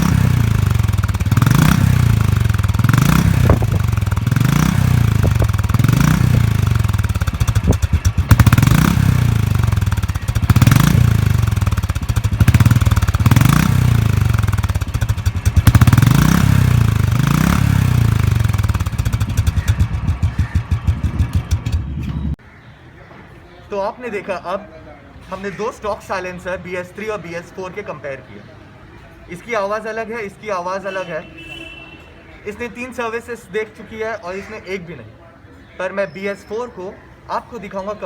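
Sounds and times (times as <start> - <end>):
motorcycle engine revving: 0.0 - 22.4.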